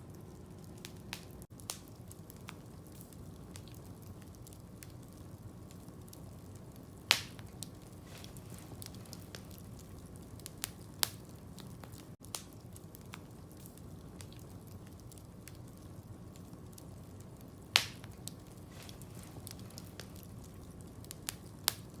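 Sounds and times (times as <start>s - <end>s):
campfire crackling: 0.0s - 22.0s
low steady rumble: 0.0s - 22.0s
sharp loud fire pops: 7.1s - 9.4s, 17.8s - 18.2s.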